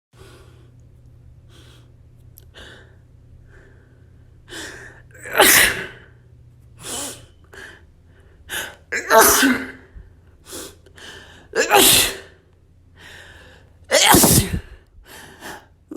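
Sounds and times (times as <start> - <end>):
person sneezing: 5.2 - 6.0, 9.0 - 9.9, 11.6 - 12.4, 13.9 - 14.8.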